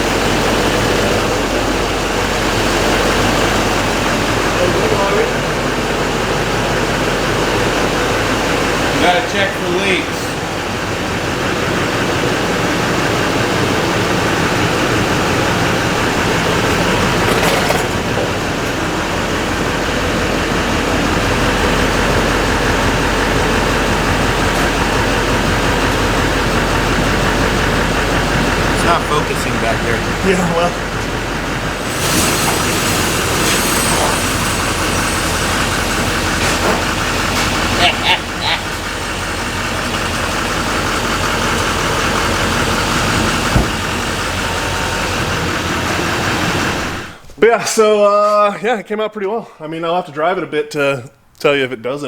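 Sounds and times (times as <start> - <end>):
diesel engine idling: 0.0 - 47.3.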